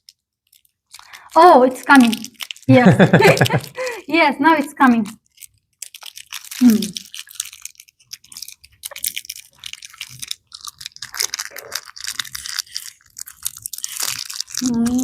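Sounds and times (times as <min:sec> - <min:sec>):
person chewing candy: 0:00.0 - 0:04.0, 0:05.0 - 0:15.0
person humming: 0:02.7 - 0:03.9.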